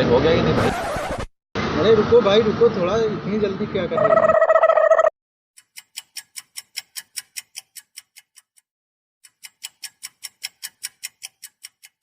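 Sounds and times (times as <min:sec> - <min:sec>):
clock ticking: 0:05.6 - 0:12.0.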